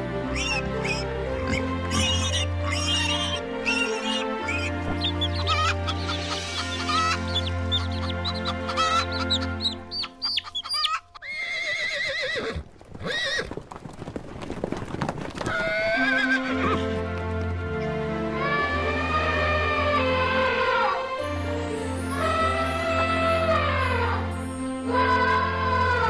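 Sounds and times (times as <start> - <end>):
animal high-pitched wavering cries: 0.3 - 12.3.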